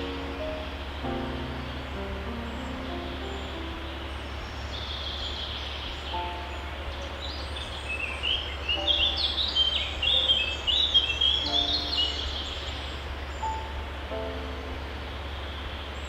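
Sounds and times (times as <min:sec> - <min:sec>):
background hiss: 0:00.0 - 0:16.0
songbirds chirping: 0:00.0 - 0:16.0.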